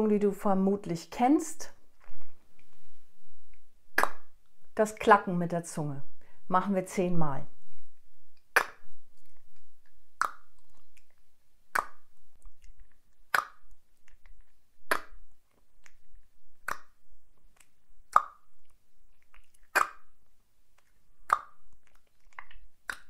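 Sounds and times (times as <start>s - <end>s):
woman clicking her tongue: 19.6s - 20.1s.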